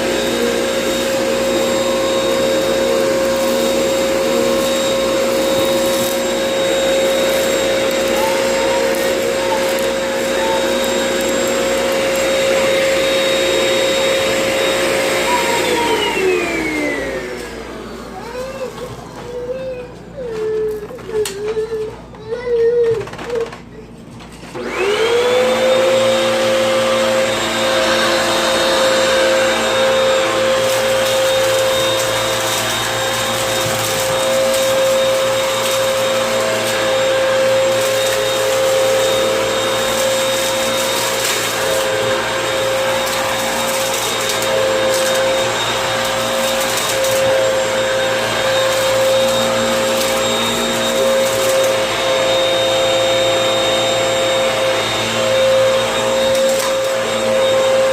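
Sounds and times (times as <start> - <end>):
vacuum cleaner motor whine: 0.0 - 22.1, 23.0 - 57.9.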